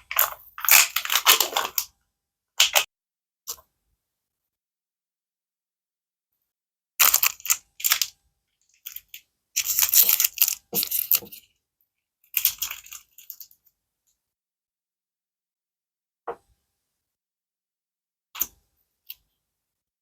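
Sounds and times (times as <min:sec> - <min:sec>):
packaging crinkling and rustling: 0:00.0 - 0:01.8, 0:08.7 - 0:11.5.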